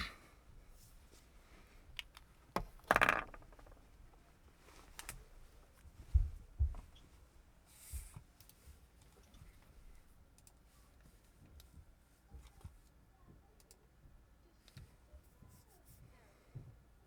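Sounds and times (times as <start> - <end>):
faint clicks and ticks: 10.3 - 11.8.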